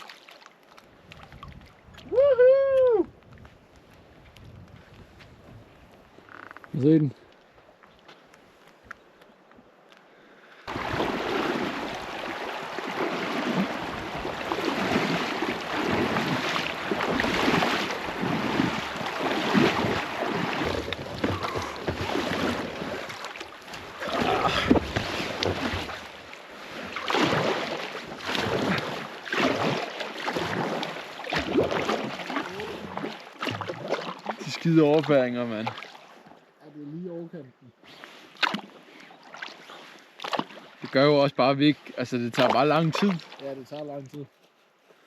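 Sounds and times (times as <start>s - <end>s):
water splashing around kayak: 0.0s - 2.4s, 3.1s - 36.9s, 37.8s - 45.0s
wind buffeting microphone: 3.0s - 5.8s.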